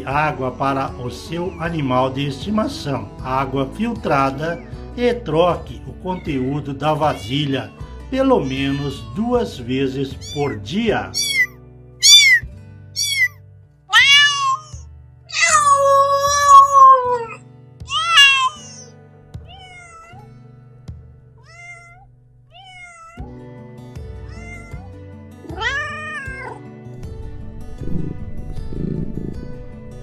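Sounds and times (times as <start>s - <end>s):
soft background music: 0.0s - 30.0s
cat meowing: 4.3s - 4.8s, 6.0s - 9.4s, 10.1s - 18.9s, 19.5s - 20.3s, 21.4s - 23.3s, 24.2s - 26.6s.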